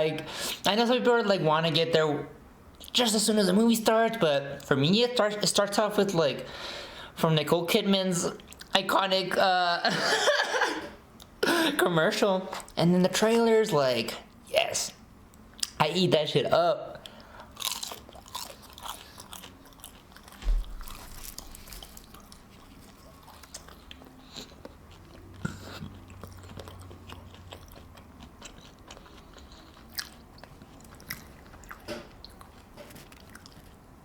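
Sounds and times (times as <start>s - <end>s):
chewing and biting food: 17.4s - 33.9s
low thump: 20.4s - 21.2s.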